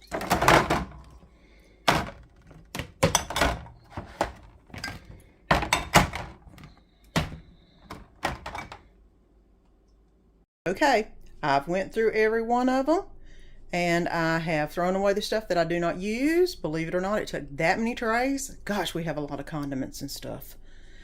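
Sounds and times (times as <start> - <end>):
bottles knocking into plastic bins: 0.0 - 8.9.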